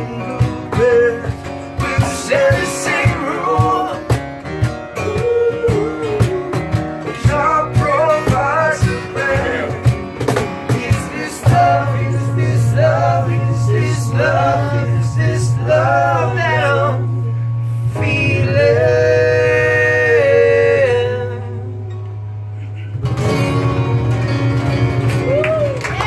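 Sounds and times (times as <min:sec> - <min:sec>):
man singing: 0:00.0 - 0:04.2, 0:05.0 - 0:22.1
acoustic guitar: 0:00.0 - 0:26.0.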